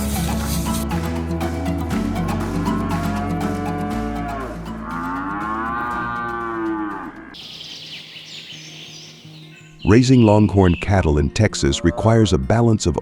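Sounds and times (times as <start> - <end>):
cattle mooing: 2.6 - 7.4.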